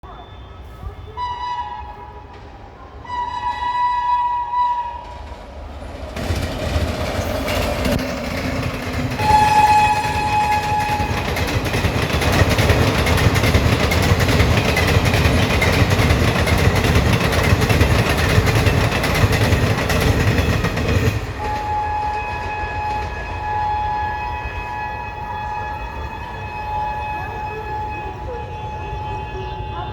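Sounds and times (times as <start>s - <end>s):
train rushing and wheel clatter: 0.1s - 29.9s
locomotive horn blasts: 3.0s - 5.2s, 9.1s - 11.4s, 21.4s - 29.9s.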